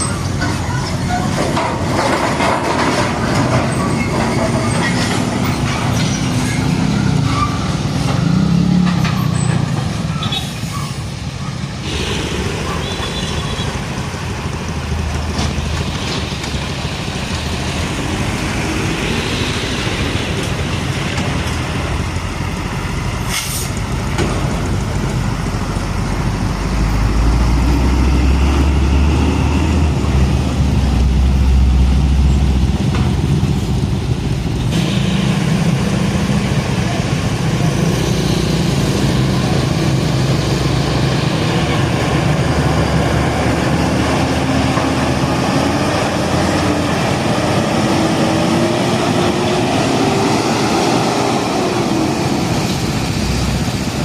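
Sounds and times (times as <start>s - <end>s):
diesel truck engines rumbling: 0.0s - 54.0s
air brake hiss: 23.3s - 23.8s.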